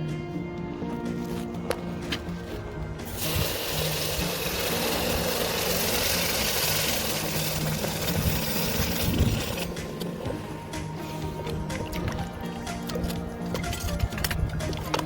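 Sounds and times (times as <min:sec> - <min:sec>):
background music: 0:00.0 - 0:15.0
hissing motor-like machine noise: 0:03.1 - 0:10.7.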